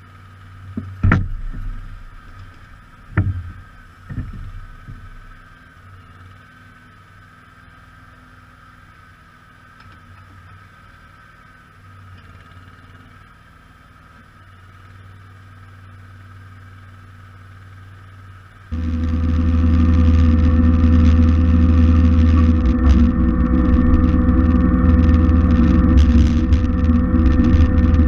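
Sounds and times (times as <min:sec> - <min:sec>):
garden tractor engine running: 0:00.0 - 0:06.8, 0:18.5 - 0:28.0.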